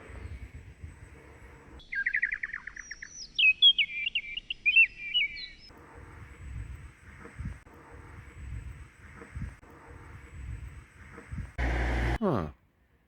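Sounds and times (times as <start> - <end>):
songbird singing: 0.0 - 5.7
outdoor background noise: 0.0 - 13.0.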